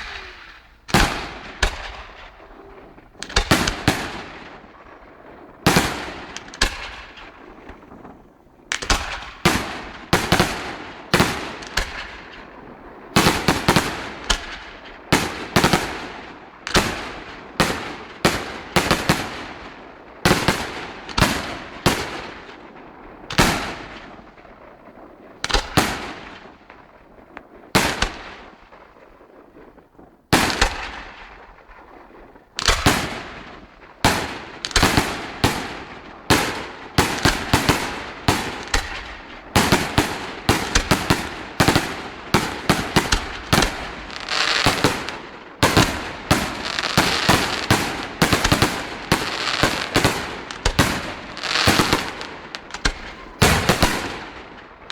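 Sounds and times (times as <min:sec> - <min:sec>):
fireworks shells bursting: 0:34.0 - 0:54.9.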